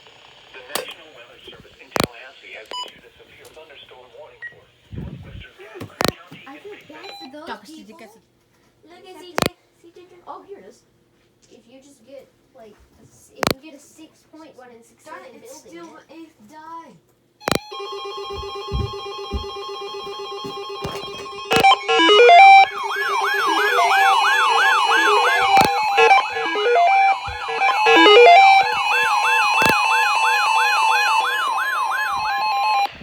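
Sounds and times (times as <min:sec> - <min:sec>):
sharp clicks: 0:17.5 - 0:17.7, 0:20.8 - 0:31.5
multi-tone alert sound: 0:17.5 - 0:32.9
wailing electronic siren: 0:17.5 - 0:33.0
high electronic warbling: 0:20.9 - 0:33.0.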